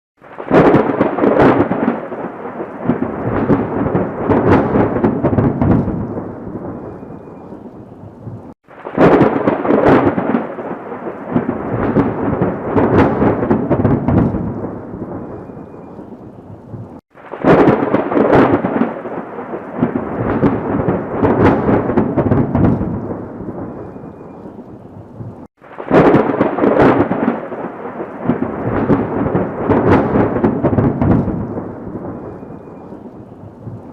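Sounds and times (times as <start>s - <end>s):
thunder cracking and rumbling: 0.2s - 33.9s.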